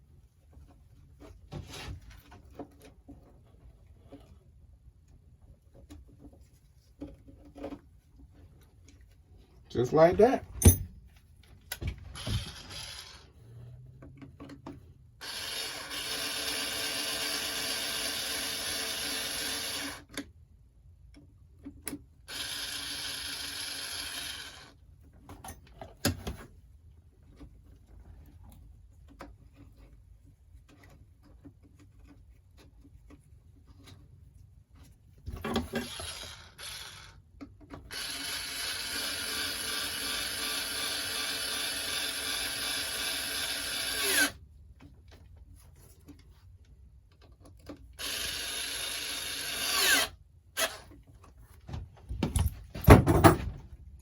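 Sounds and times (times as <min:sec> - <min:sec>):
power tool motor running: 0:12.2 - 0:13.2, 0:15.2 - 0:20.0, 0:35.8 - 0:37.2, 0:43.2 - 0:44.3, 0:48.0 - 0:50.9.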